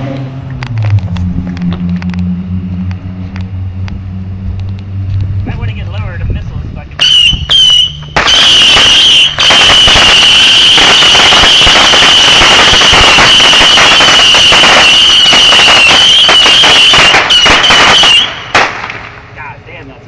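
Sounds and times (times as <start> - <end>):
firework whistle: 7.0 - 19.2
firework crackling and popping: 7.0 - 19.6.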